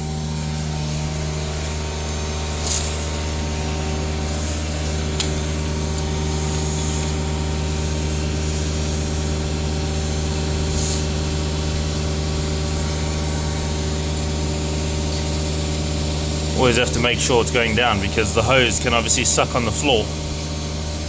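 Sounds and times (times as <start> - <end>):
truck engine droning: 11.4 - 21.0.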